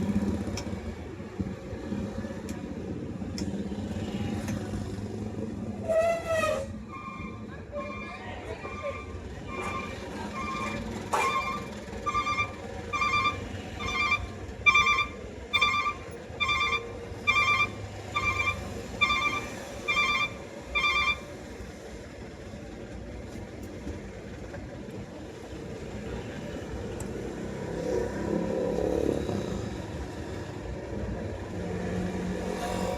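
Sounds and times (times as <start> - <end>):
road traffic hum: 0.0 - 32.9
electronic warning beeps: 12.1 - 21.2.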